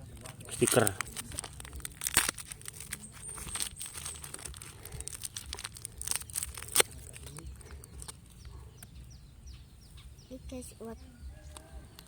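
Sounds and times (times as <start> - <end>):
packaging rustling and crinkling: 0.0 - 8.6.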